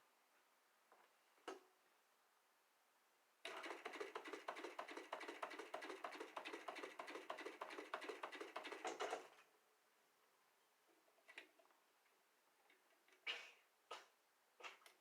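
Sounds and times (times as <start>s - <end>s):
sewing machine clattering: 3.5s - 9.4s.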